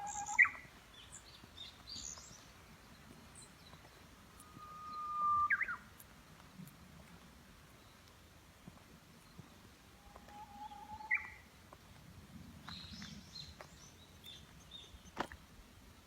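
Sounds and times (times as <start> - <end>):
bird whistling song: 0.0 - 0.6, 4.4 - 5.9, 10.2 - 11.4.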